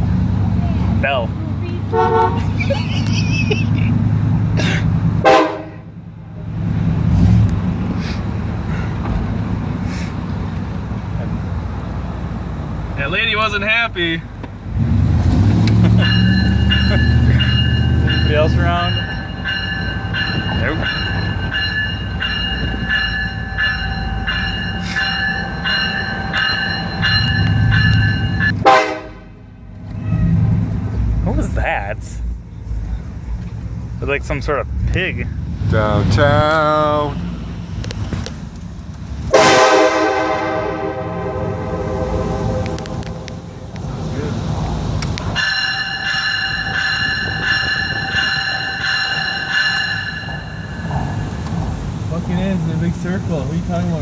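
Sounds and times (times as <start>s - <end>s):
car engine: 0.0s - 54.0s
road noise: 0.0s - 54.0s
electronic locomotive bell clanging: 15.8s - 29.0s, 45.2s - 51.7s
loud falling horn blast: 28.6s - 29.3s, 39.3s - 43.2s.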